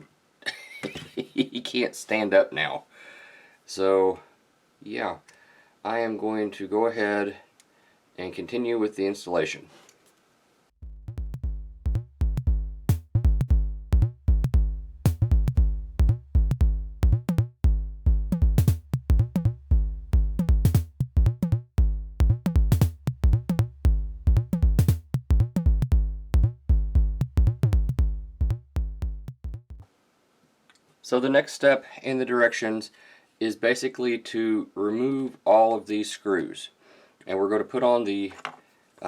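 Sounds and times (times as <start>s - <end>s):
electronic music with drum beat: 10.8s - 29.8s.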